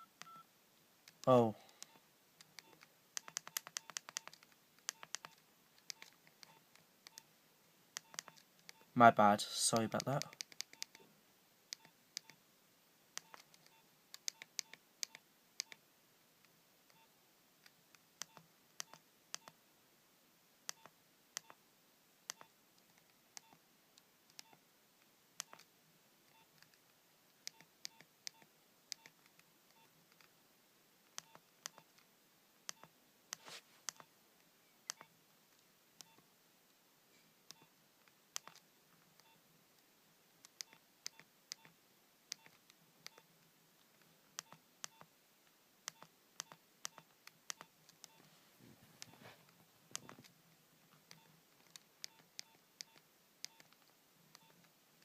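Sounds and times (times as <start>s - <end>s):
short keypad beeps: 0.0s - 0.4s.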